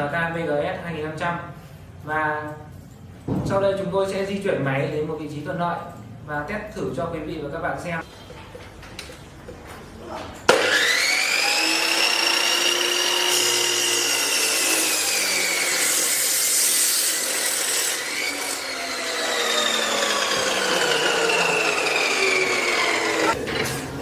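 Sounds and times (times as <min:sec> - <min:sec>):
cut-off saw motor whine: 0:10.5 - 0:16.0, 0:18.0 - 0:23.4
saw blade grinding steel: 0:10.5 - 0:23.4.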